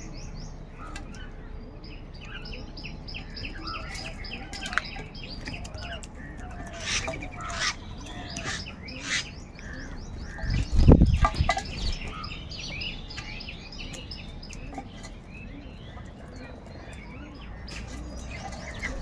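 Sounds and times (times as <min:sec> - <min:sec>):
crows calling: 0:03.7 - 0:10.7
short high bird calls: 0:06.7 - 0:10.5.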